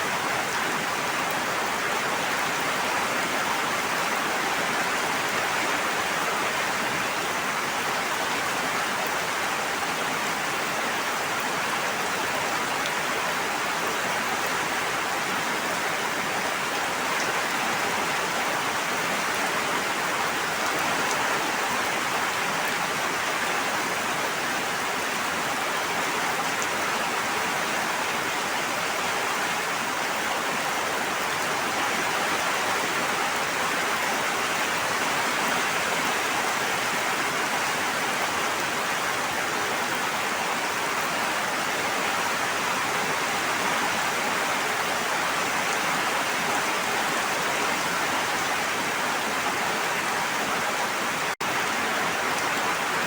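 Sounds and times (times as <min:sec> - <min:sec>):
water rushing: 0:00.0 - 0:53.0.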